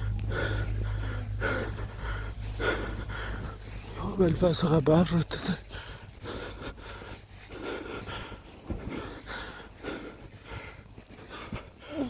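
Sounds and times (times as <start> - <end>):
person breathing hard: 0.0 - 4.0, 5.6 - 12.0.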